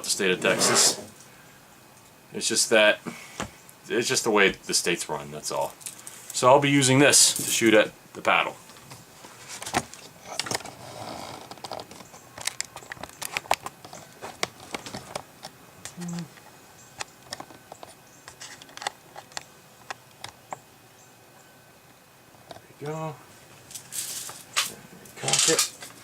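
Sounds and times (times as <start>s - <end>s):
air rifle clicks and rattles: 11.4s - 15.6s, 17.0s - 20.4s, 23.7s - 26.0s.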